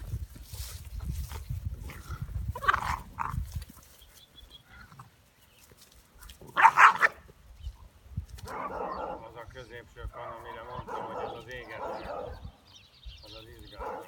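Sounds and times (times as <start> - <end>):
puppy barking: 6.6 - 7.2, 8.5 - 9.2, 10.2 - 12.4, 13.8 - 14.0.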